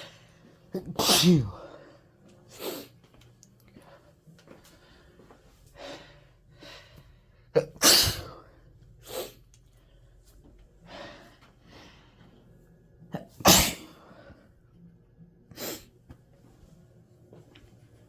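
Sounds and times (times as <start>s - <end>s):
person sneezing: 0.8s - 1.6s, 7.6s - 8.4s, 13.2s - 14.0s
soft breaths: 1.5s - 7.5s, 8.3s - 13.1s.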